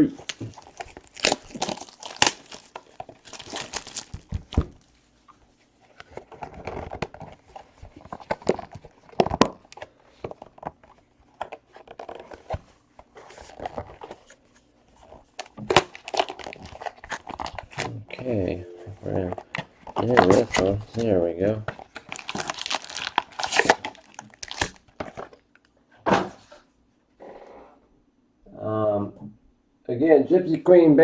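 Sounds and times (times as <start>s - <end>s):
plastic wrapping tearing and crinkling: 0.0s - 4.9s, 5.9s - 14.3s, 15.0s - 18.2s, 19.4s - 21.1s, 21.7s - 25.4s.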